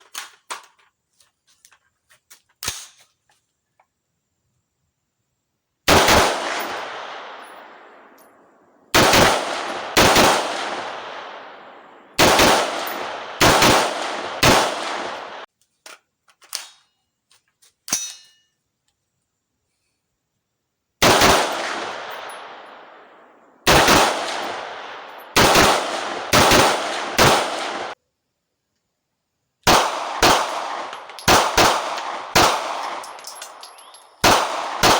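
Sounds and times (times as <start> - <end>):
rifle shots with echo: 5.9 - 15.5, 21.0 - 28.0, 29.7 - 34.9
metallic handling clicks: 30.8 - 31.3, 32.8 - 34.2.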